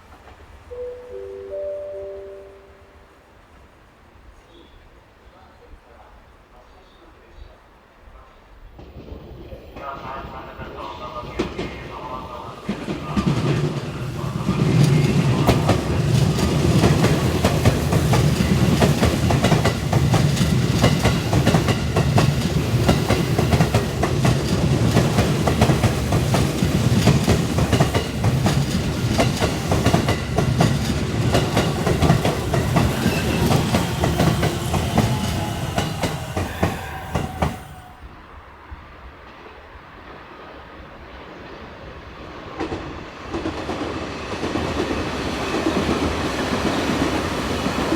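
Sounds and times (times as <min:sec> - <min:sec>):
train wheels clattering on rails: 0:08.7 - 0:37.9, 0:39.2 - 0:47.9.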